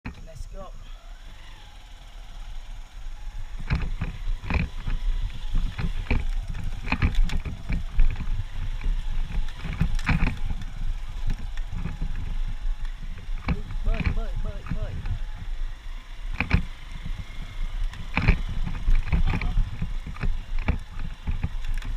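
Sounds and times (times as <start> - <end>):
motorcycle rumbling over rough ground: 0.0 - 21.9
knocks and rattles: 3.6 - 15.5, 16.3 - 21.9.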